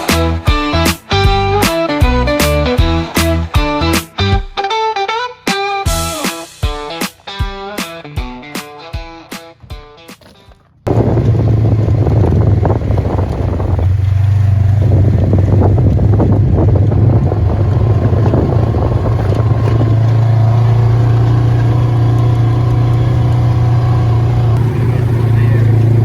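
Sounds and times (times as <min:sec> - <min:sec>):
rattles: 0:09.4 - 0:14.4
wind noise: 0:09.6 - 0:23.3
vehicle engine droning: 0:09.6 - 0:26.0.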